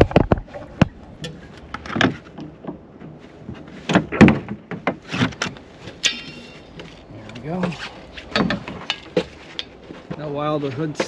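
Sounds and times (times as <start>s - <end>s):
clunks and knocks of wiper parts: 0.0s - 6.9s, 7.6s - 9.4s.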